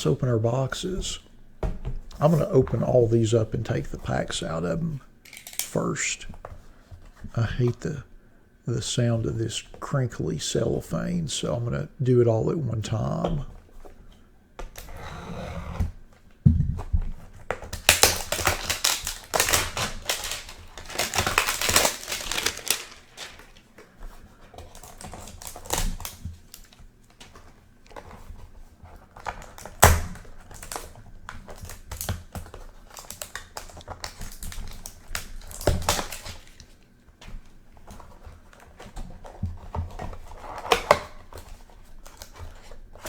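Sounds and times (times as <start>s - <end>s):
cellophane wrappers crackling: 2.2s - 6.0s, 17.5s - 23.8s, 24.6s - 26.8s, 29.2s - 36.8s
boxes knocking on surface: 16.4s - 17.2s.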